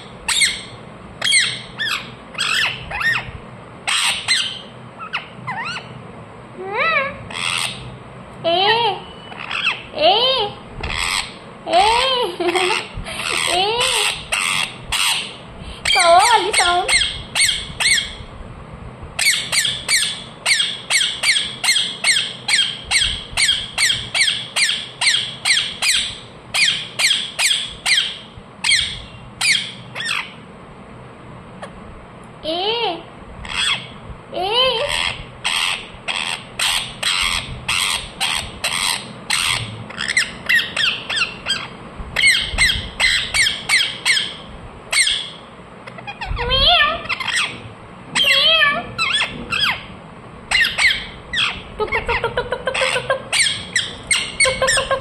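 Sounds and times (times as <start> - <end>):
parrot chirping and squawking: 0.0 - 6.0, 6.7 - 8.0, 9.0 - 18.3, 19.2 - 30.4, 33.4 - 34.0, 34.6 - 55.0
parrot rising and falling call: 50.5 - 55.0.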